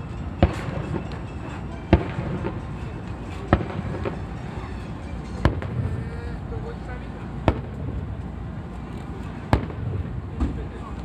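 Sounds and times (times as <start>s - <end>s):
faint fireworks pops: 0.4s - 2.7s, 3.3s - 4.2s, 5.4s - 6.0s, 7.4s - 8.3s, 9.5s - 10.8s
fireworks bangs: 0.4s - 2.8s, 3.4s - 4.4s, 5.4s - 6.0s, 7.4s - 8.0s, 9.5s - 10.7s.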